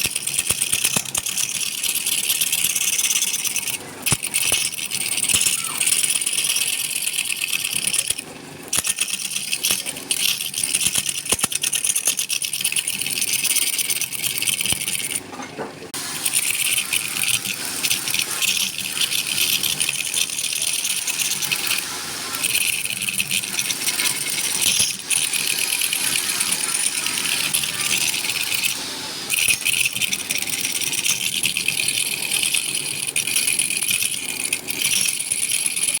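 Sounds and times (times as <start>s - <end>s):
lathe tool scraping spinning wood: 16.0s - 36.0s.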